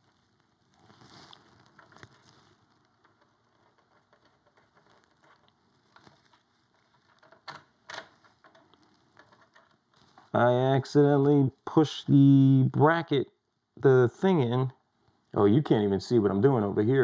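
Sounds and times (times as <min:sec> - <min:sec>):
small hardware clicking and rustling: 0:01.6 - 0:10.3.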